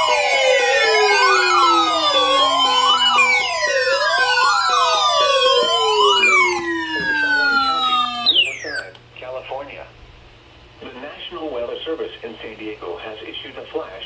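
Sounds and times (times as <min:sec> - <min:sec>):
falling electronic tones: 0:00.0 - 0:08.9
rising and falling siren wail: 0:00.0 - 0:08.9
steady tones: 0:00.0 - 0:08.9.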